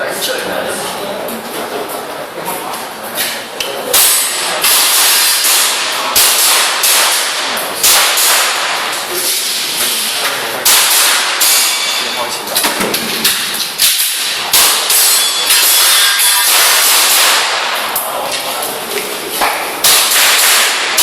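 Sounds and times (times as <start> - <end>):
gas pistol shots cracking: 4.0 - 8.9, 16.5 - 17.8, 19.8 - 21.0.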